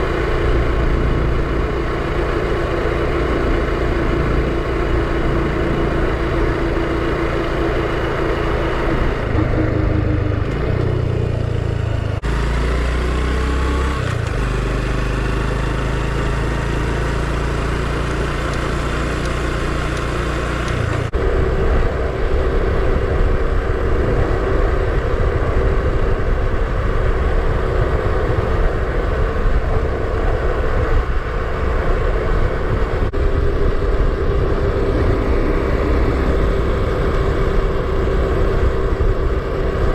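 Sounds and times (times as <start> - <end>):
motorcycle engine running: 0.0 - 39.9
road and wind noise: 0.0 - 39.9.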